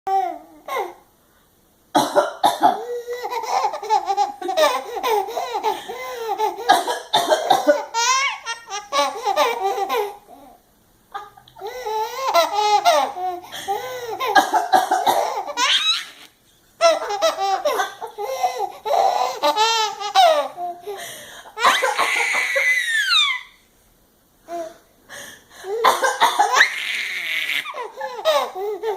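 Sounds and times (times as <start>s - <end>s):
baby belly-laughing: 2.8s - 10.6s, 11.2s - 21.0s, 21.6s - 23.6s, 25.7s - 28.9s
baby high squeal: 21.6s - 23.6s, 26.6s - 27.8s.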